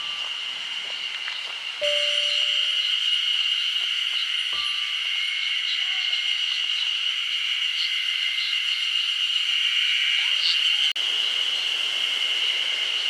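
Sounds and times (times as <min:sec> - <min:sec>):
shrill wildlife chorus: 0:00.0 - 0:13.0
short chirps: 0:01.8 - 0:02.8.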